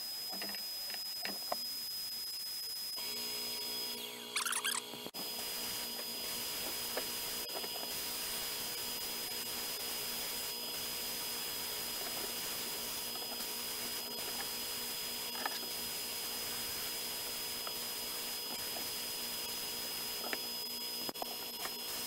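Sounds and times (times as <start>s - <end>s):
dust collector suction hum: 3.0s - 22.0s
hiss of air and abrasive: 5.2s - 20.8s.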